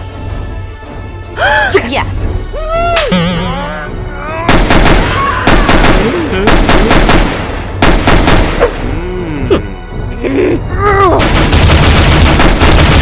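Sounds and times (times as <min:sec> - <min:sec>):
automatic gunfire bursts: 0:04.5 - 0:08.6, 0:11.2 - 0:13.0.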